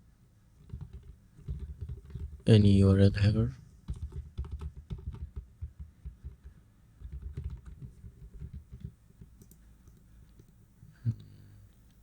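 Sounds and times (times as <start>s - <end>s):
computer keyboard typing: 0.6s - 2.4s, 3.9s - 10.5s.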